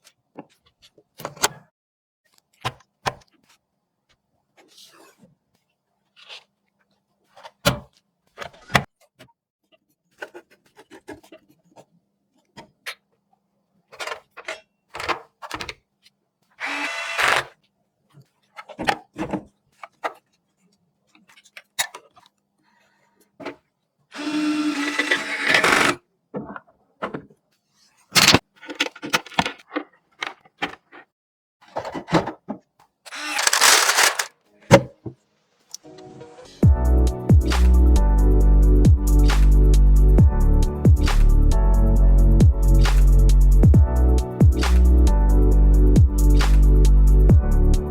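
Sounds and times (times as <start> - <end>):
small motor running: 16.6 - 17.5, 24.2 - 26.0, 33.1 - 34.3
computer parts clicking and knocking: 28.2 - 30.9, 33.1 - 34.3.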